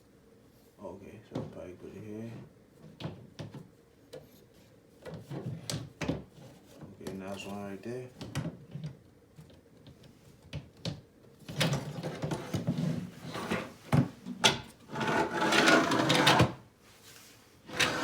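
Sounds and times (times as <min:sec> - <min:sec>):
wooden door scraping: 0:14.9 - 0:16.6.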